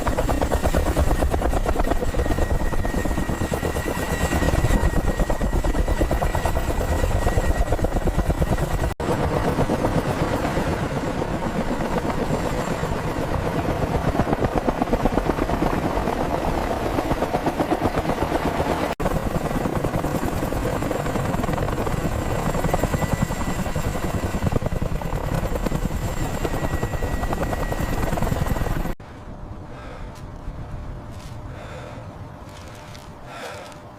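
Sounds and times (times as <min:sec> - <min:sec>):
helicopter rotor chop: 0:00.0 - 0:29.0.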